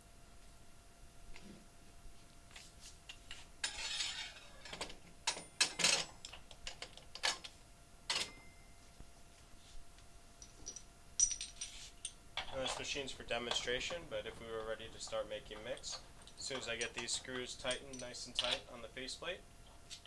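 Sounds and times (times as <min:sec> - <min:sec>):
sharp clicks and clanks: 0:12.4 - 0:18.8.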